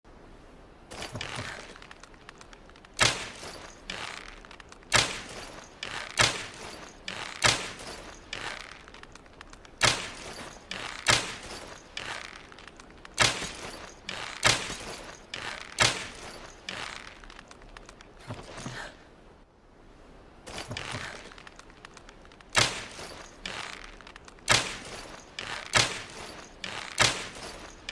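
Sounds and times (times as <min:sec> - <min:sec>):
soft noisy sounds: 0:00.1 - 0:27.9
longbow shots cracking: 0:03.0 - 0:17.4, 0:22.4 - 0:27.9.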